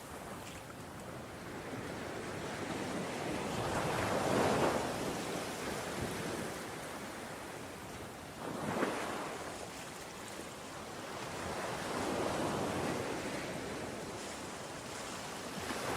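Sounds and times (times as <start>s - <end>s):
ocean waves breaking on shore: 0.0s - 15.9s
wind on microphone: 1.1s - 9.8s.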